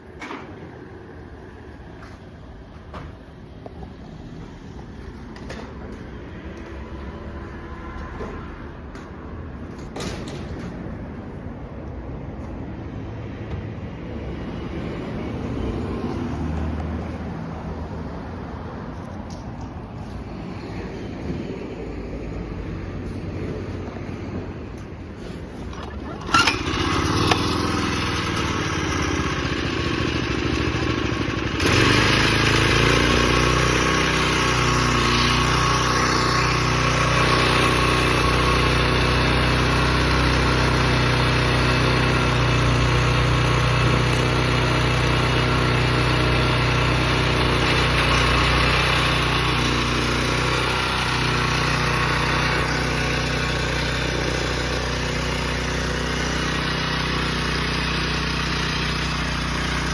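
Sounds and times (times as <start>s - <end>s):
small tiller engine running: 25.2s - 59.9s.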